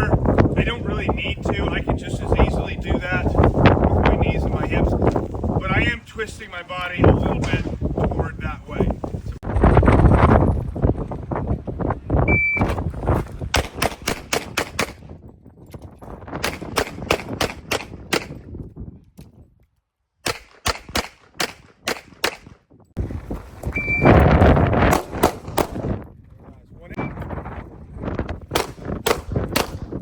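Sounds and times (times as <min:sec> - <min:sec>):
rapid pistol shots: 0:13.6 - 0:15.0, 0:16.4 - 0:18.4, 0:20.2 - 0:22.6, 0:24.9 - 0:25.9, 0:28.5 - 0:29.9
shot timer beep: 0:23.8 - 0:24.2.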